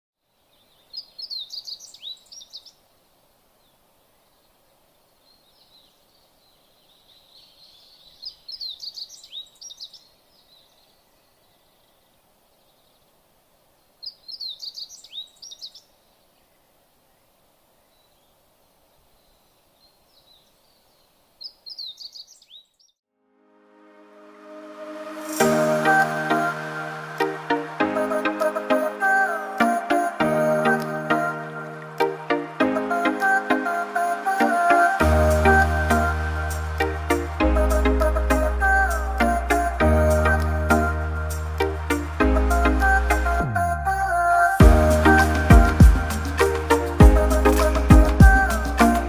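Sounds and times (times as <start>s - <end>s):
faint steady hiss: 0.2s - 49.0s
songbird chirping: 0.2s - 49.0s
music: 23.4s - 44.0s, 44.6s - 49.0s.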